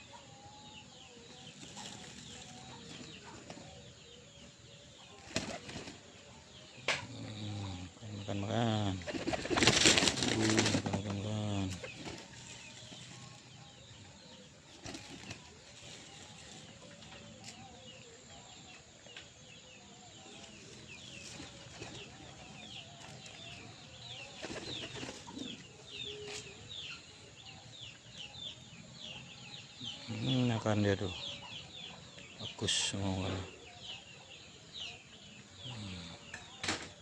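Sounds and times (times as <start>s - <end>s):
pigeon wing flutters: 5.3s - 6.0s, 9.0s - 10.9s.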